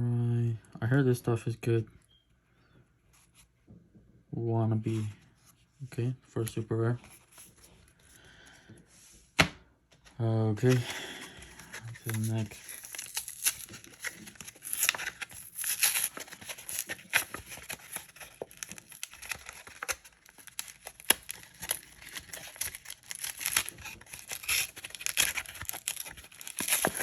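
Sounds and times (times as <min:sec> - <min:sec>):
foil wrapper crinkling and tearing: 0:10.6 - 0:27.0.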